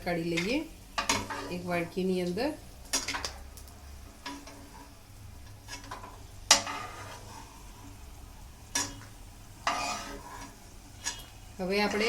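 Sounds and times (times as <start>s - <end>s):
faint sizzle: 0.0s - 12.0s
spoon scraping and clinking pan: 5.7s - 7.3s, 8.7s - 12.0s.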